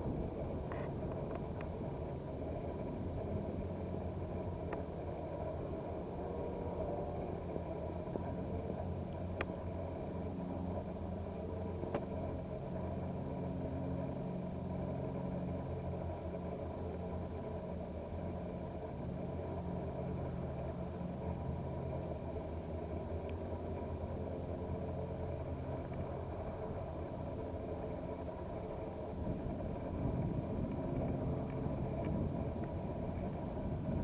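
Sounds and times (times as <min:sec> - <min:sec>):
light aircraft engine droning: 0:00.0 - 0:34.0
faint tick: 0:00.7 - 0:01.8, 0:04.7 - 0:04.9, 0:09.1 - 0:09.6, 0:11.8 - 0:12.4, 0:23.0 - 0:23.9, 0:25.8 - 0:26.1, 0:30.2 - 0:33.4.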